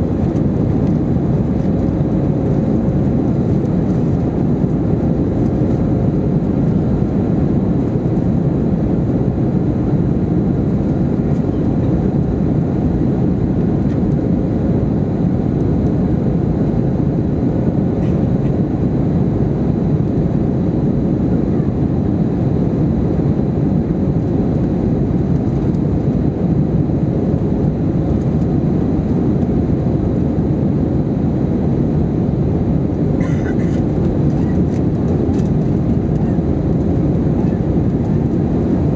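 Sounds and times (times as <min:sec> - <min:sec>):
airplane cabin engine noise: 0:00.0 - 0:38.9.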